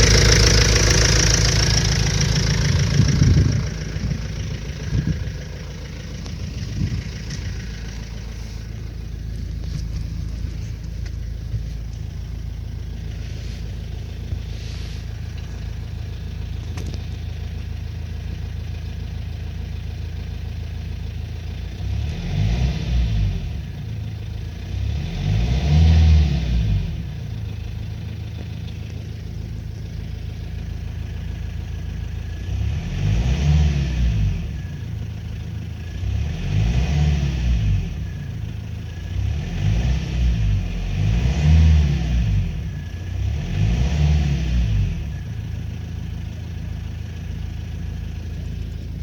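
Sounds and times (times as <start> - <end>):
engine knock: 0.0 - 21.9
diesel engine idling and revving: 0.0 - 49.0.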